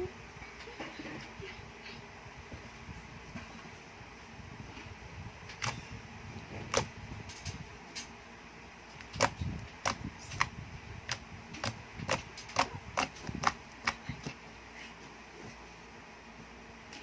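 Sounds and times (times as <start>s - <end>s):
slime clicking and popping: 9.0s - 10.5s, 11.1s - 14.3s.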